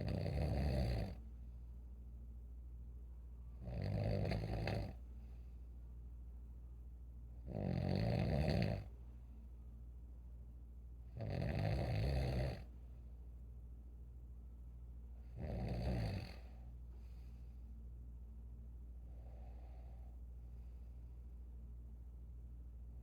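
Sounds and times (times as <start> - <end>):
person snoring: 0.0 - 1.2, 3.6 - 5.0, 7.5 - 8.9, 15.4 - 16.5
steady low hum: 0.0 - 23.0.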